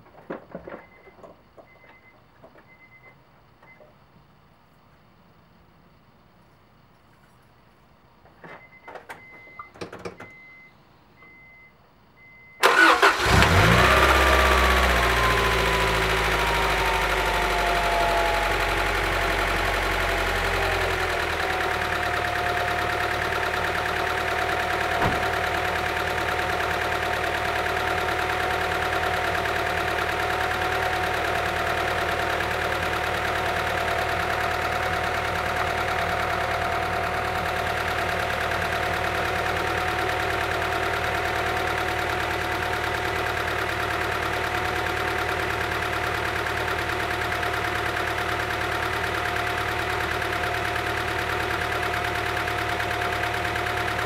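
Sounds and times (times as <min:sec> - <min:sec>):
car engine idling: 0:12.6 - 0:54.0.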